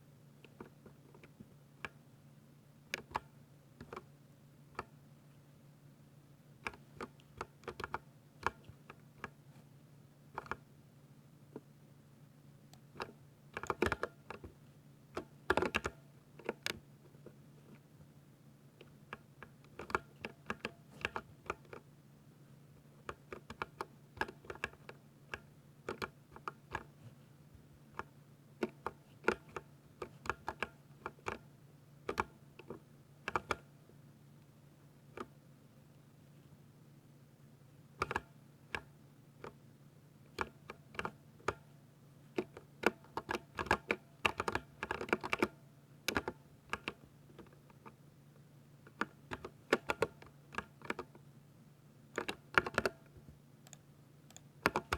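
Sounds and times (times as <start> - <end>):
faint low hum: 0.0 - 54.9
mechanical keyboard typing: 13.0 - 14.4, 28.6 - 31.4, 38.0 - 39.6, 42.4 - 45.5, 52.1 - 54.9.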